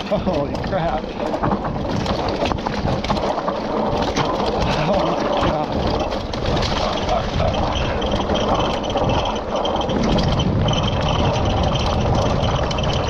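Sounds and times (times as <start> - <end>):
mountain bike rattling: 0.0 - 13.0
tyres rumbling on rough ground: 0.0 - 13.0
wind on microphone: 0.0 - 13.0.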